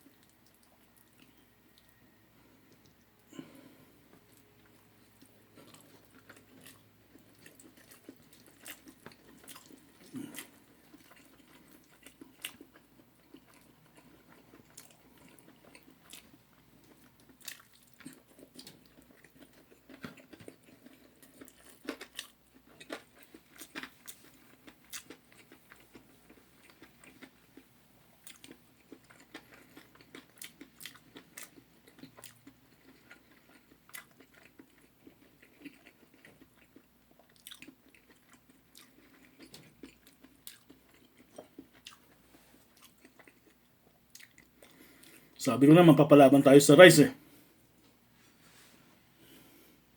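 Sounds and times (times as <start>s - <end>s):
crunchy bites and chewing: 5.5s - 45.2s.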